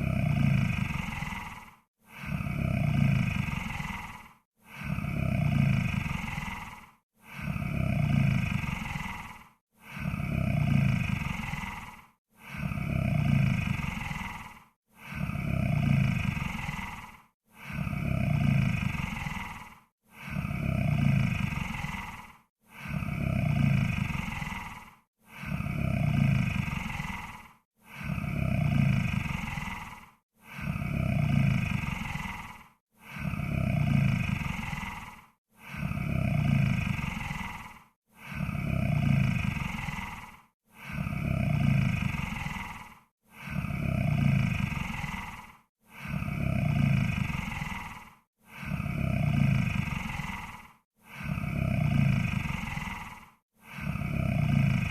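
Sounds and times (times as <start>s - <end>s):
low rough monster snore: 0.0s - 54.9s.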